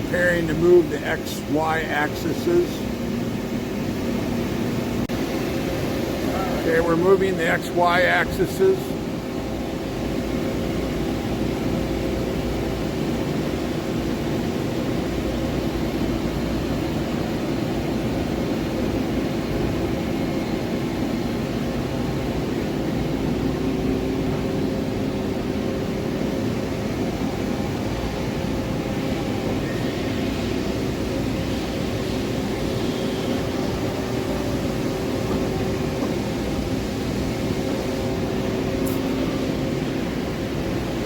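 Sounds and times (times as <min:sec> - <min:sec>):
milling machine humming: 0:00.0 - 0:41.0.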